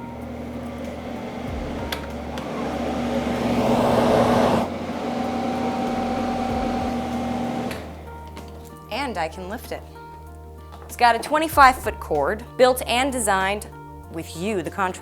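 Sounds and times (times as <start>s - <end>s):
blower fan hum: 0.0s - 9.5s.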